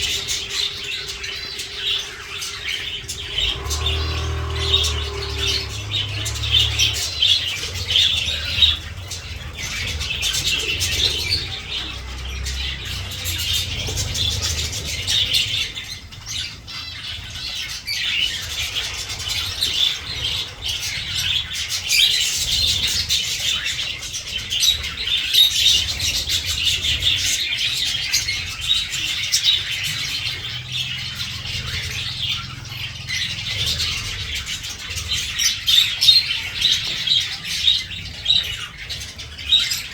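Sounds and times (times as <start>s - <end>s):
low rumble: 0.0s - 16.2s
birds chirping and twittering: 0.0s - 39.9s.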